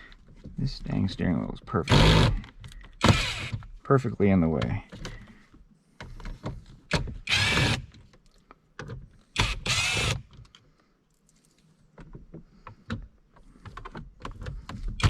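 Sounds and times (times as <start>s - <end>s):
cordless drill spinning: 3.0s - 3.6s, 7.2s - 7.9s, 9.4s - 10.3s.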